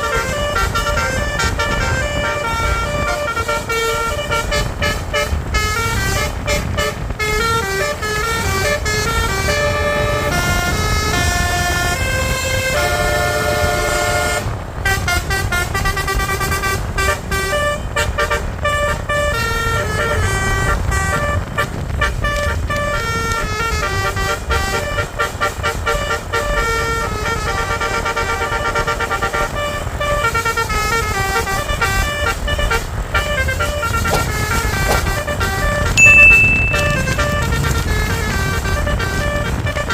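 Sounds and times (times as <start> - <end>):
low rumble of bus engine: 0.0 - 36.0, 37.2 - 39.9
multi-tone bus horn melodies: 0.0 - 39.9
road noise: 0.0 - 39.9.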